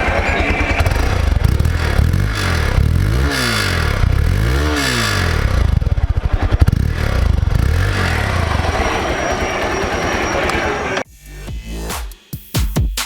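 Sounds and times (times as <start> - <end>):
motorcycle engine revving: 0.0 - 11.0.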